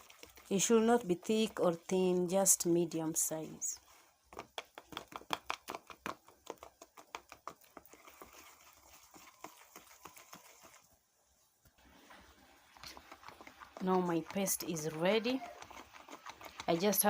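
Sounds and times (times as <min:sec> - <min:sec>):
batter beaten in a bowl: 0:00.0 - 0:11.0, 0:11.8 - 0:17.0.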